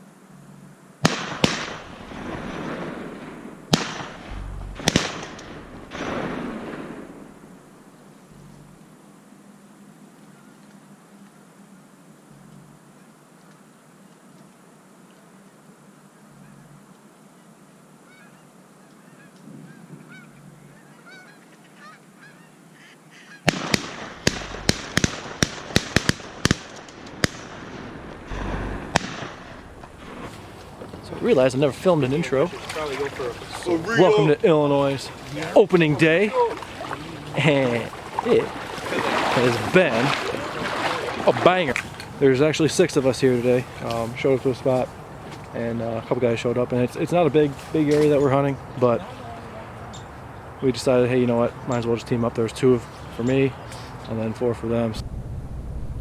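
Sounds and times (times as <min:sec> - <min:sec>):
shotgun shots with echo: 0:01.0 - 0:07.4, 0:23.5 - 0:29.7
geese honking faintly: 0:04.2 - 0:08.9, 0:09.8 - 0:13.5, 0:15.3 - 0:23.5, 0:29.5 - 0:41.9.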